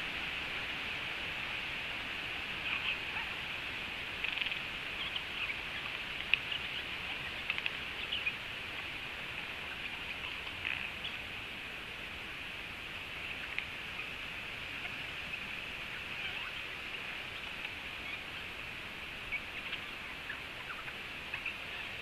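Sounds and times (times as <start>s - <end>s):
steady high-pitched hiss: 0.0s - 22.0s
bird calls and chirps: 2.6s - 3.4s, 4.2s - 11.3s, 14.8s - 22.0s.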